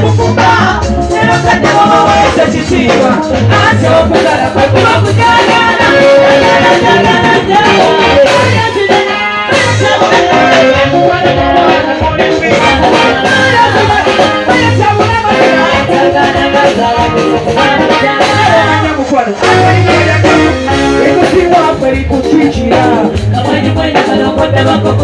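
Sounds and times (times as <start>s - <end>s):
singing over a steady beat: 0.0s - 25.0s
shaker percussion: 12.3s - 25.0s.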